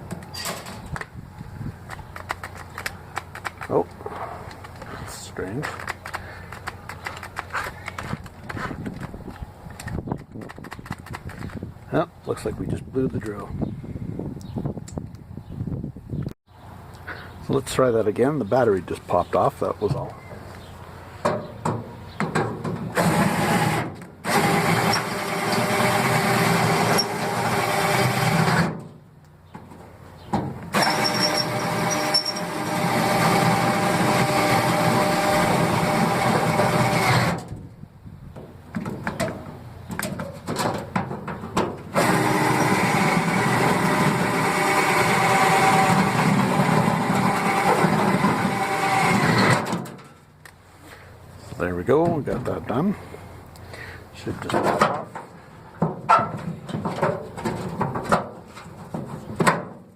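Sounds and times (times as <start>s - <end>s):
cordless drill drilling metal: 23.0s - 28.7s, 30.7s - 37.4s, 41.9s - 49.8s.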